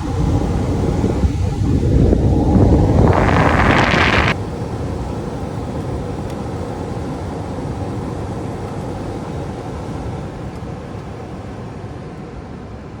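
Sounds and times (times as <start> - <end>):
furnace blower rushing air: 1.8 - 4.4.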